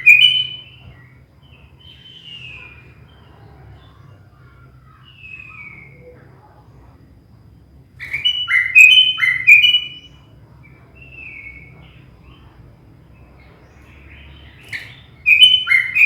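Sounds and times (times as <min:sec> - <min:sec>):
bulbul singing: 0:00.0 - 0:03.4, 0:08.0 - 0:16.0.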